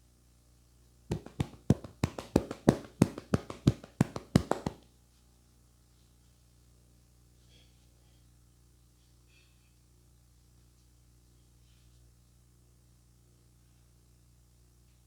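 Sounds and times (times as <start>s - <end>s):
sharp hand slaps: 1.1s - 4.8s.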